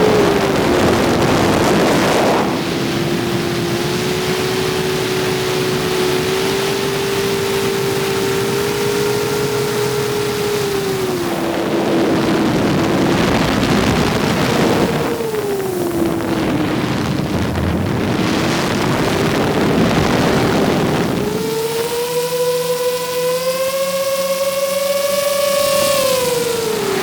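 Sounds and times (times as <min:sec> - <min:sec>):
drone motors whining: 0:00.0 - 0:27.0.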